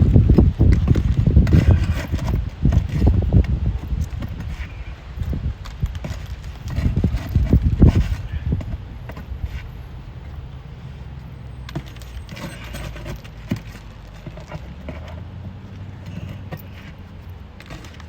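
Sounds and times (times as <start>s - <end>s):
shingles clicking and crackling: 0.0s - 10.4s, 11.2s - 18.0s
steady low rumble: 0.0s - 12.3s.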